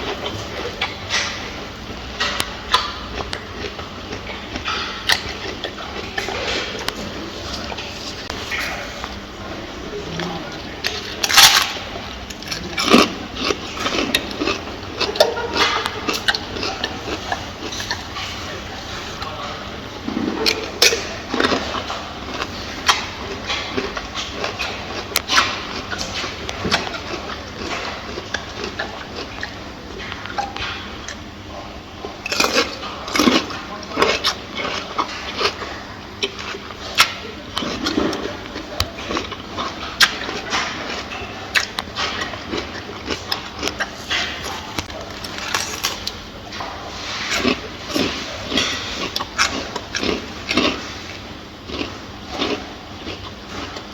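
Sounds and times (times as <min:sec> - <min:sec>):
food crunching and snapping: 0:00.0 - 0:53.9
gorilla chewing food: 0:00.0 - 0:53.9.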